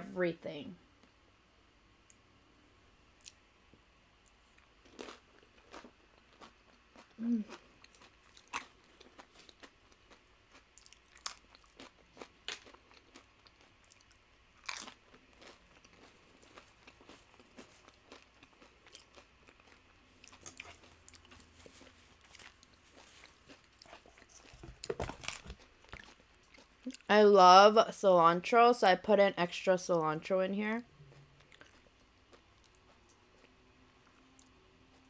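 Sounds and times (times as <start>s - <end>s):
crunching tortilla chips: 4.3s - 27.0s, 31.1s - 33.6s.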